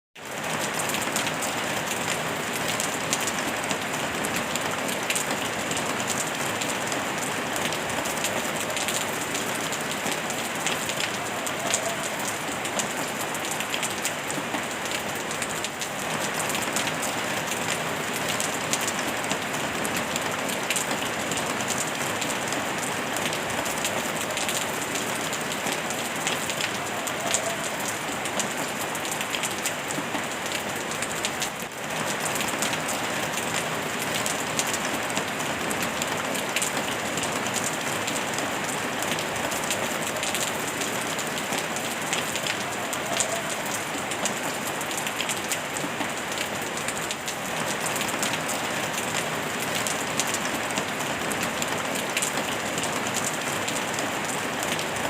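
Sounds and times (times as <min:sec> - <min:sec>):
rain falling on a surface: 0:00.2 - 0:55.0.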